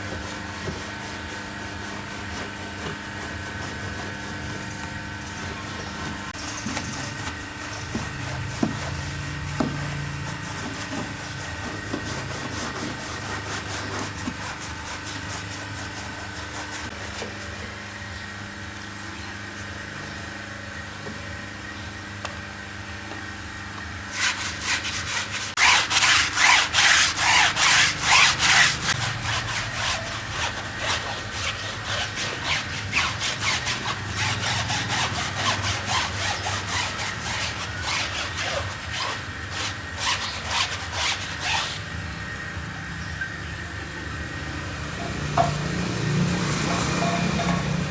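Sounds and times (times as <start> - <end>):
stiff brush scrubbing: 0.0 - 17.6, 24.0 - 41.8
steady hum and hiss: 0.0 - 47.9.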